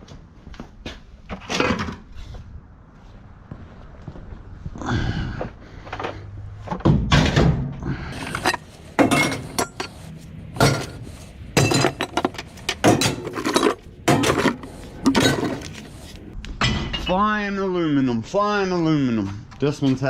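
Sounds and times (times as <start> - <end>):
scrap metal clanking onto pile: 8.2 - 17.0.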